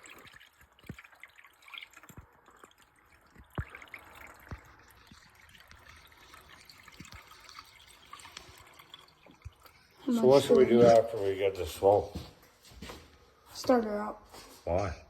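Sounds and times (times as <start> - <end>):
liquid trickling and dripping: 0.0 - 15.0.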